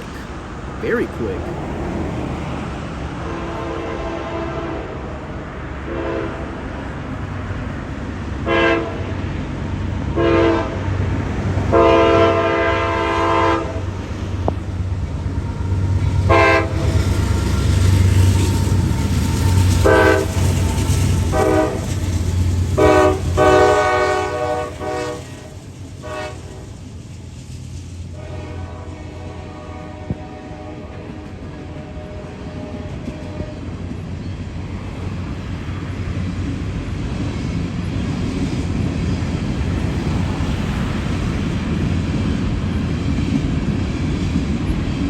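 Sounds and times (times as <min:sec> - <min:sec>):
diesel locomotive rumble: 0:00.0 - 0:45.0
train horn blasts: 0:03.2 - 0:05.2, 0:05.8 - 0:06.6, 0:08.4 - 0:09.2, 0:10.1 - 0:11.0, 0:11.7 - 0:13.9, 0:16.2 - 0:17.0, 0:18.9 - 0:22.0, 0:22.8 - 0:26.7, 0:28.1 - 0:33.7.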